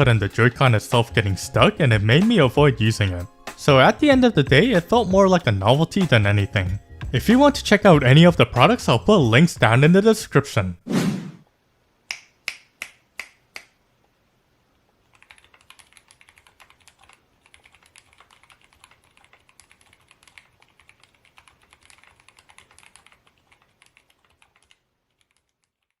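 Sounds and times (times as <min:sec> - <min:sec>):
typing on mechanical keyboard: 0:15.1 - 0:26.0.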